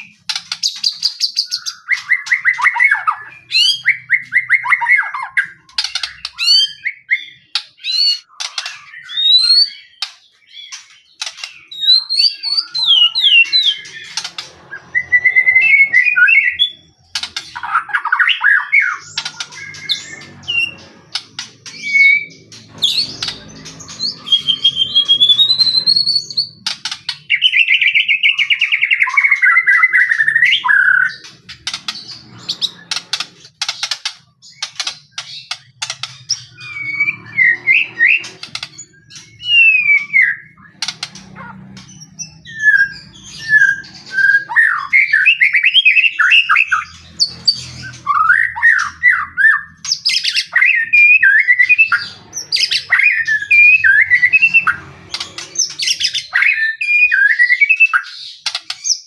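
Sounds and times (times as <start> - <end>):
buzzy bird trill: 0.0 - 59.0
bird singing whistled phrases: 14.7 - 16.8, 21.7 - 23.1, 24.0 - 26.5, 27.4 - 31.2, 39.3 - 40.6, 47.8 - 54.8, 55.9 - 58.2
sharp clicks: 31.2 - 36.5.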